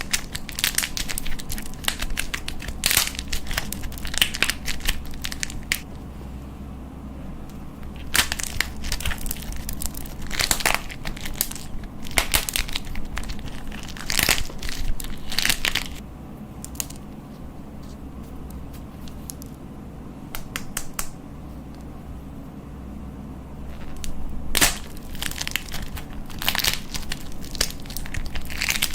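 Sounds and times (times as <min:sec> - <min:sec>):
crunchy slime crackling: 0:00.0 - 0:06.0, 0:07.4 - 0:16.0, 0:16.6 - 0:19.6, 0:23.6 - 0:28.9.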